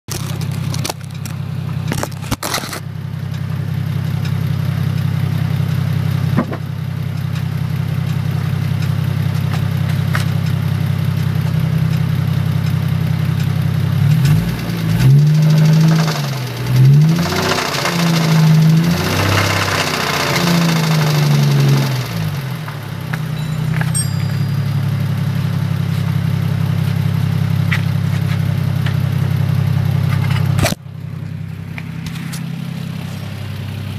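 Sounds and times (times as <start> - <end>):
car engine idling: 0.1 - 33.9
car engine revving: 13.8 - 33.9.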